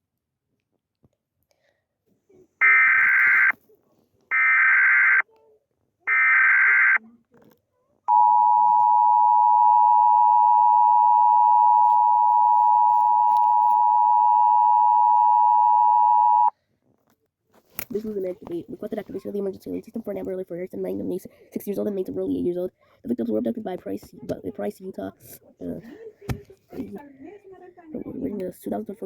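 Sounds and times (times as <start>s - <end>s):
data tone bursts: 2.6s - 3.5s, 8.1s - 16.5s
two-tone alert signal: 2.6s - 3.5s, 8.1s - 16.5s.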